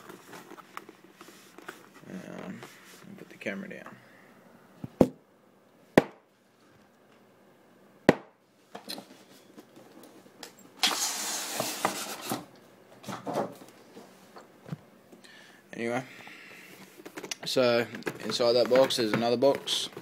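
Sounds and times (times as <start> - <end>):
cardboard rustling: 0.0 - 3.1
cardboard sliding and rubbing: 10.8 - 12.5.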